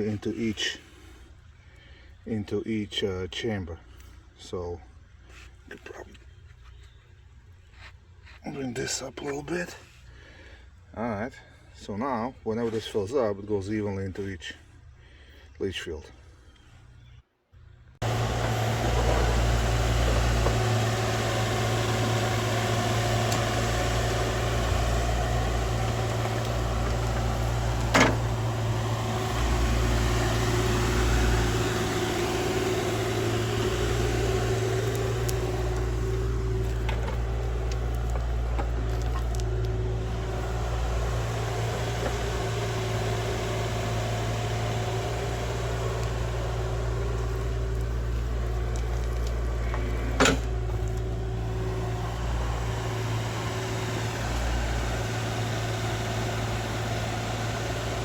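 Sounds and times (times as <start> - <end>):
heavy machinery engine humming: 18.0 - 58.0.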